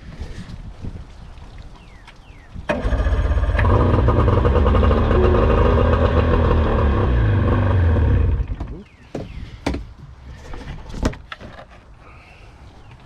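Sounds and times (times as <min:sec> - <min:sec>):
outboard motor starting and running: 0:02.7 - 0:08.9.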